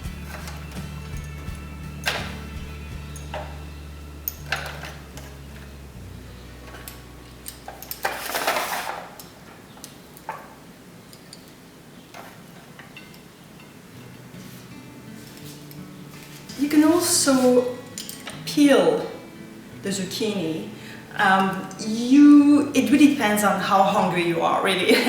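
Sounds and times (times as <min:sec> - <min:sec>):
short scraping rustle: 0:07.7 - 0:09.6, 0:14.4 - 0:17.8.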